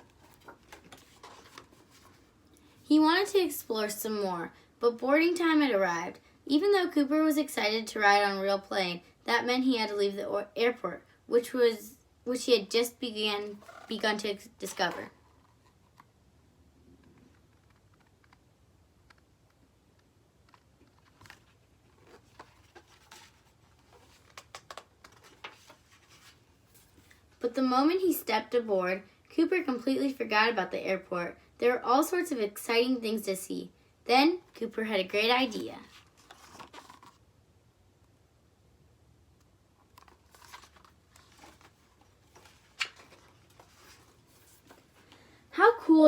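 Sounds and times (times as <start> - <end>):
book page turning: 0.0 - 2.7, 20.4 - 27.2, 35.4 - 37.2, 39.8 - 45.2
faint clicks and rustles: 16.9 - 27.4, 39.4 - 45.4.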